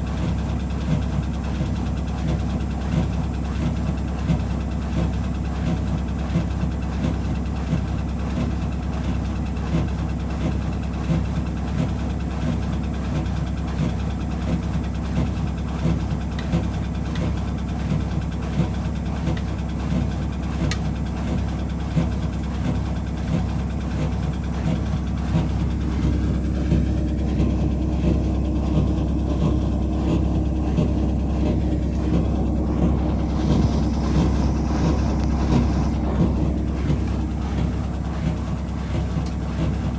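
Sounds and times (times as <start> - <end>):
washing machine spinning: 0.0 - 39.9.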